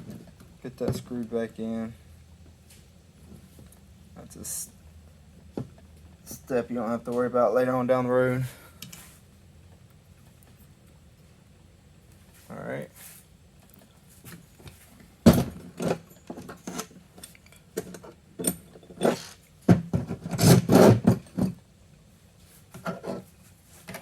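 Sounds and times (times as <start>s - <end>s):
metal tools clinking and scraping: 15.8s - 19.5s.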